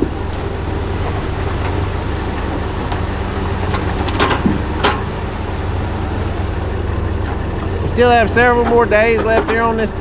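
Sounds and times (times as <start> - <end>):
heavy diesel engine running: 0.0 - 10.0
sharp knocks: 3.7 - 5.1.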